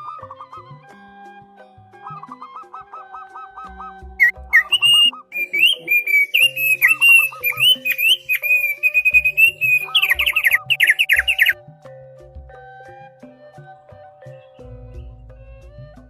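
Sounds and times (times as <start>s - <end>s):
songbird singing: 4.2s - 11.6s.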